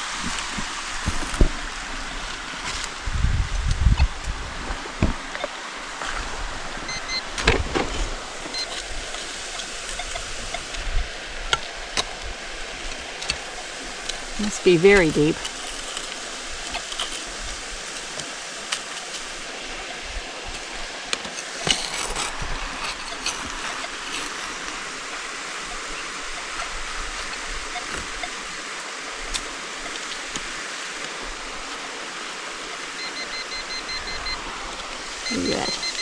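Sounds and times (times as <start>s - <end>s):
creek water rushing: 0.0s - 36.0s
digging among rocks and gravel: 4.5s - 36.0s
metal detector beeping: 6.9s - 7.3s, 8.5s - 8.8s, 9.8s - 10.7s, 32.8s - 34.5s, 35.1s - 36.0s.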